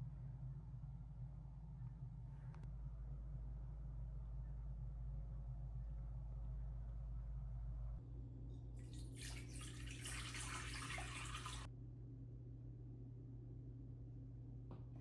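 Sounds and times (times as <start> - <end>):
low electrical hum: 0.0 - 15.0
water running from a tap: 8.8 - 11.7.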